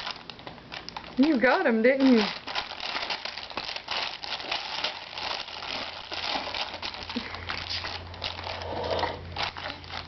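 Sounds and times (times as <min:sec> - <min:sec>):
plastic package crinkling: 0:00.0 - 0:10.0.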